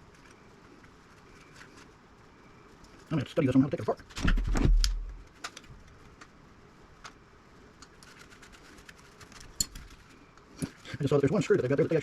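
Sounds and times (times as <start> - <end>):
small metal parts clicking: 7.8 - 10.0.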